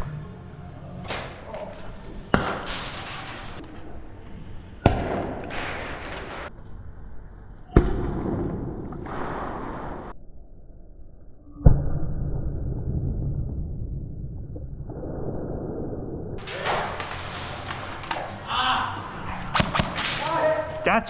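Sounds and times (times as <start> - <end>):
grenade launcher bangs: 2.2 - 3.6, 16.4 - 21.0.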